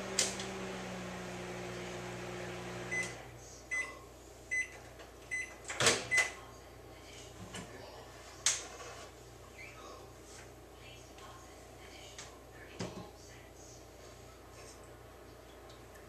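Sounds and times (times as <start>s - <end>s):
microwave oven humming: 0.0s - 5.5s
microwave beeps: 2.7s - 6.4s.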